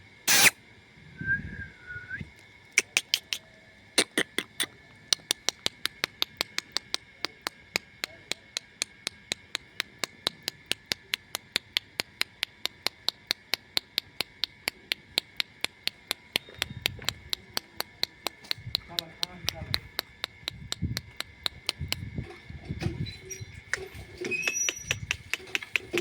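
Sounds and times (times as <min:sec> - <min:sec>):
rapid sharp clicking: 0:05.1 - 0:22.1, 0:23.7 - 0:26.0.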